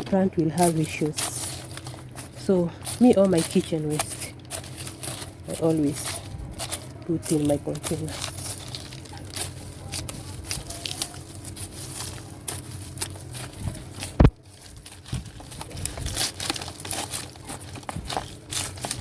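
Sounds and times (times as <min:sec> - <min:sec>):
dry soil being stirred: 0:00.0 - 0:19.0.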